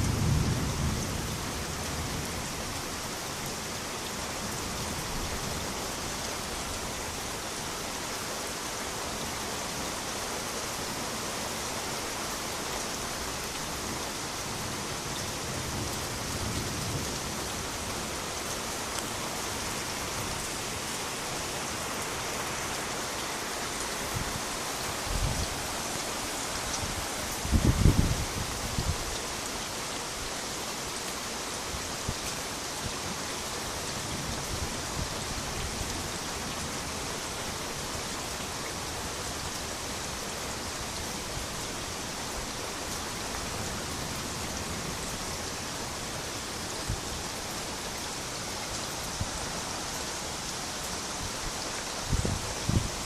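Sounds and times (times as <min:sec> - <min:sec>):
thunder rumbling: 0:00.0 - 0:02.3
steady rain falling: 0:00.0 - 0:53.0.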